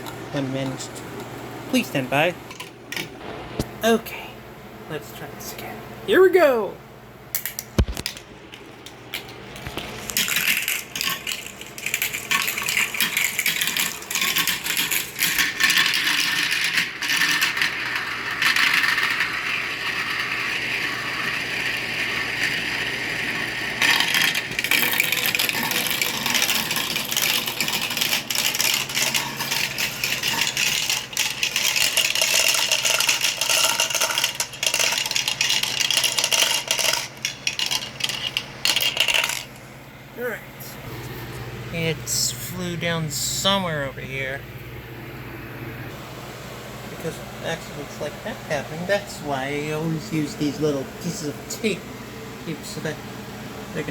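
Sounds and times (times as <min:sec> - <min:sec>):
marbles rolling down plastic track: 0:10.1 - 0:39.5.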